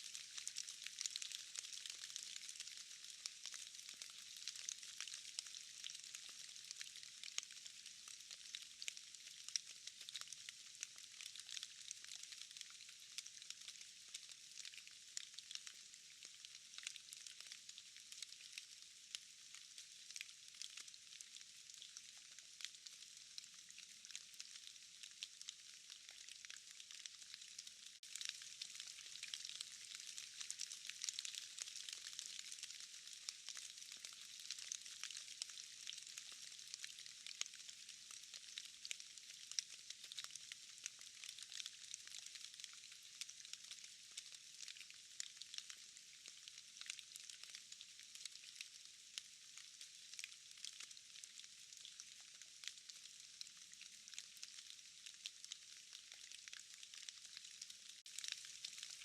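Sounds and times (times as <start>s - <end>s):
rain dripping in forest: 0.0s - 59.0s.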